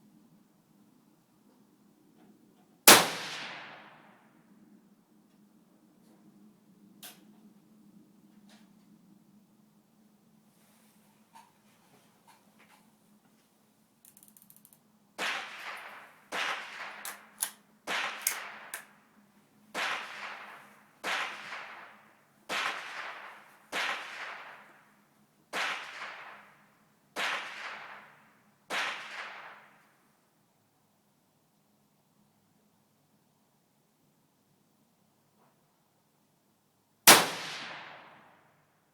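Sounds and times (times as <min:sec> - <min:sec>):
gunshots with echo: 0:19.8 - 0:24.7.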